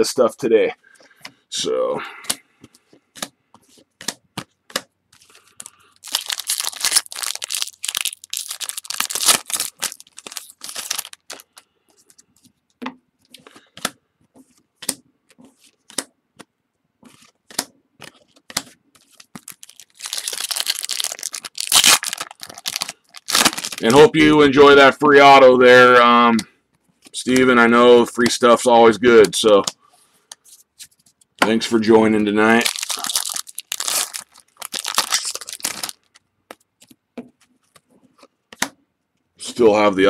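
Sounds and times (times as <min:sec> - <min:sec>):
cards clicking and rustling: 0:02.2 - 0:12.6, 0:13.2 - 0:24.0, 0:32.5 - 0:38.8
card wrappers tearing and crinkling: 0:05.2 - 0:11.6, 0:17.1 - 0:24.2, 0:32.2 - 0:36.2.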